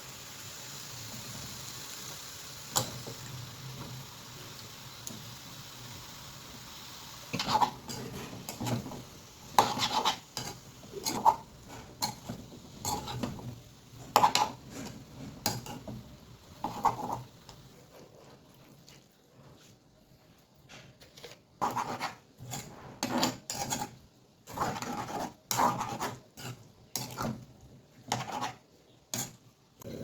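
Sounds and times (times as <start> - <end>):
steady hiss: 0.0 - 17.8
metal spoon scraping pan: 7.3 - 16.0, 16.6 - 17.3, 21.6 - 27.4, 28.1 - 29.4.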